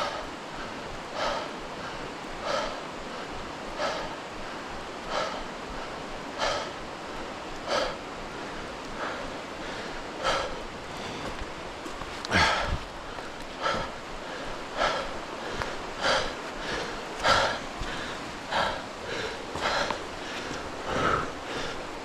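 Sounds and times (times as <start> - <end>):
steady background hiss: 0.0 - 22.0
footsteps squelching in mud: 10.8 - 13.8.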